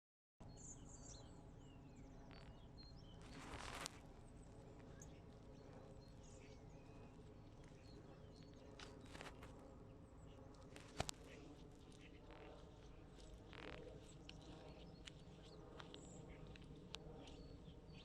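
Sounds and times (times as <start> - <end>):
small birds chirping: 0.4 - 18.0
rustle: 3.2 - 5.0.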